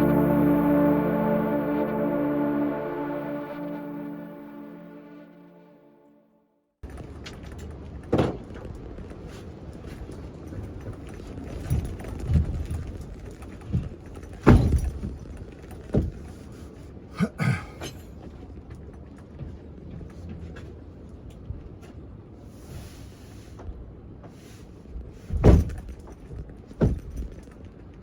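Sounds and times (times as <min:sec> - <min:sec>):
bed boards knocking and thumping: 0:26.8 - 0:27.2.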